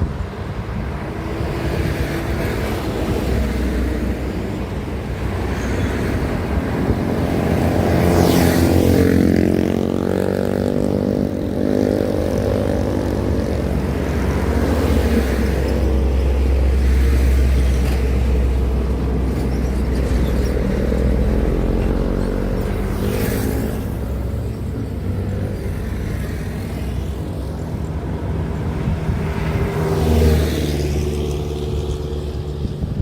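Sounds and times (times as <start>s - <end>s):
diesel truck engines droning: 0.0s - 33.0s
tyre noise of passing vehicles: 0.0s - 33.0s.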